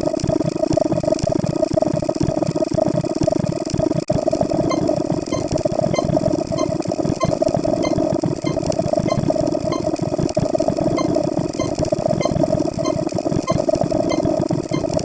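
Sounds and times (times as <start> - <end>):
layered digital droning: 4.6 - 9.9, 11.0 - 15.0.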